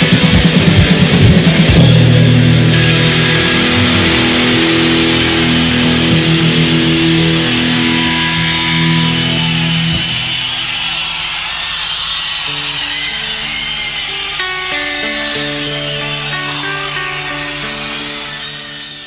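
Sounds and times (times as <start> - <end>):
held electric guitar notes: 0.0 - 10.9, 12.5 - 19.0
rock band playing: 0.0 - 19.0.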